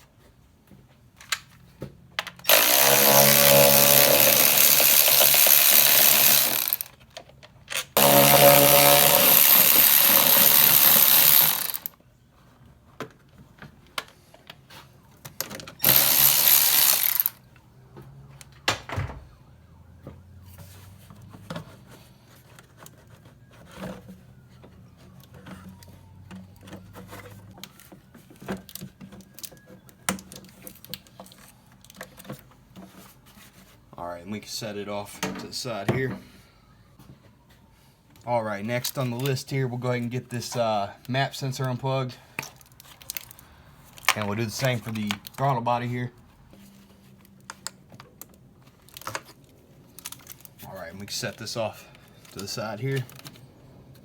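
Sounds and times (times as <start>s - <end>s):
cordless power tool running: 2.5s - 6.9s, 8.0s - 11.9s, 15.8s - 17.4s.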